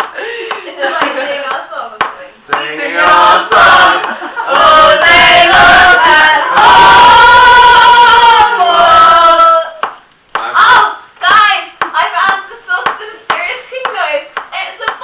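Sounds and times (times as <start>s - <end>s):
voices singing loudly: 2.5s - 9.8s.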